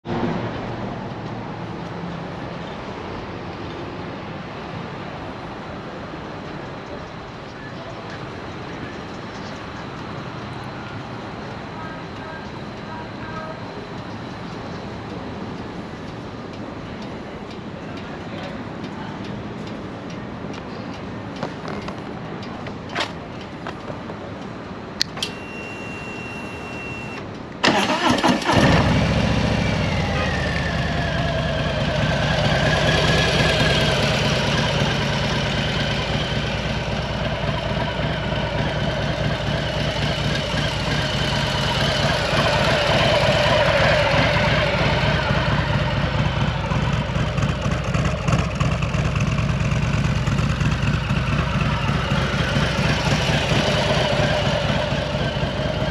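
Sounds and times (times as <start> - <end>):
short high tone: 25.2 - 27.2
motorcycle starter cranking: 27.6 - 29.2
motorcycle engine idling: 27.7 - 55.9.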